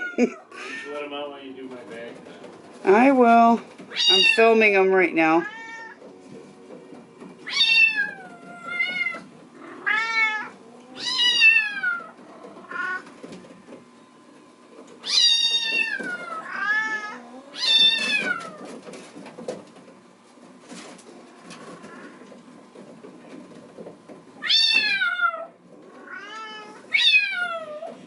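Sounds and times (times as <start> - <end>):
kitten meowing loudly: 3.9 - 4.4.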